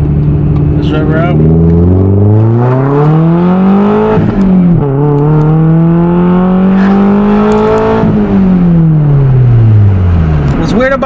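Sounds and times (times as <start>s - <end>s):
car engine accelerating: 0.0s - 11.0s.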